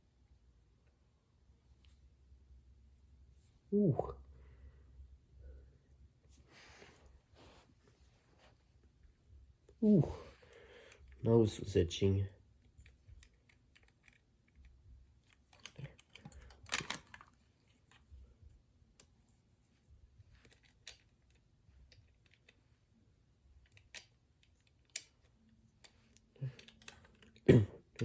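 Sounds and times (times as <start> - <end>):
small toy parts clicking: 12.6 - 18.1, 20.3 - 22.6, 23.6 - 28.0
toy parts clacking: 12.6 - 18.1, 20.3 - 22.6, 23.6 - 28.0.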